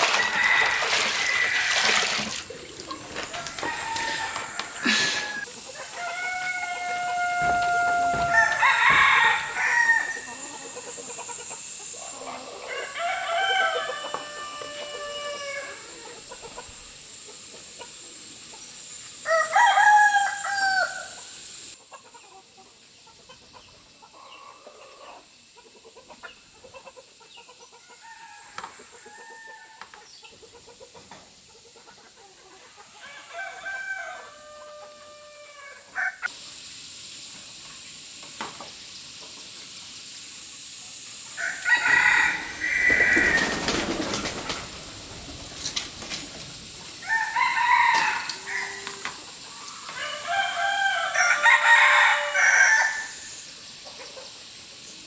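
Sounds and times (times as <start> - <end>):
roosters crowing: 0.0 - 17.5, 18.8 - 21.8, 27.8 - 29.9, 32.7 - 36.3, 41.3 - 53.5
chickens clucking: 0.0 - 18.9, 20.5 - 27.8, 30.0 - 33.2, 41.0 - 51.4, 53.2 - 55.0
steady high-pitched hiss: 0.0 - 55.0.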